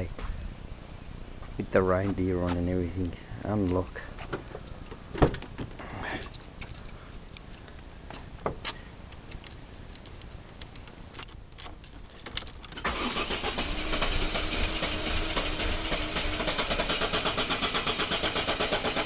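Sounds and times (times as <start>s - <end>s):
key and ignition clicks: 6.1s - 7.7s, 9.1s - 13.7s
car engine running: 11.7s - 19.0s
starter cranking engine: 12.2s - 19.0s.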